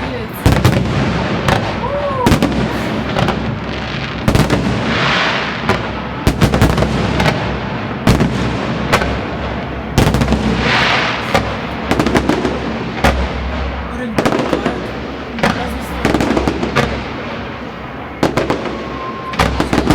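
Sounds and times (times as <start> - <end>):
fireworks hiss: 0.0 - 5.9
fireworks bangs: 0.0 - 19.9.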